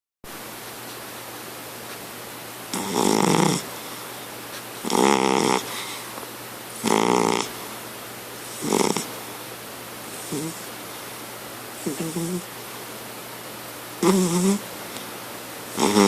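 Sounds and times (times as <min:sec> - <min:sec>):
cat snoring: 0:02.7 - 0:03.7, 0:04.8 - 0:06.0, 0:06.8 - 0:07.6, 0:08.5 - 0:09.1, 0:10.2 - 0:10.7, 0:11.8 - 0:12.5, 0:14.0 - 0:14.6, 0:15.7 - 0:16.0.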